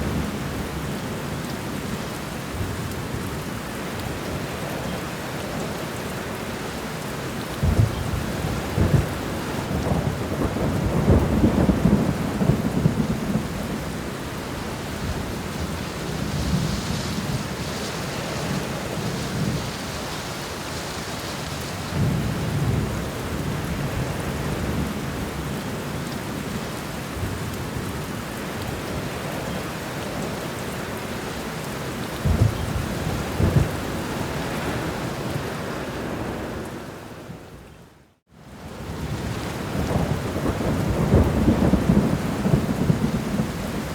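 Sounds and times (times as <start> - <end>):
heavy rain: 0.0 - 43.9
rolling thunder: 7.6 - 21.0, 32.2 - 37.5, 38.9 - 43.9.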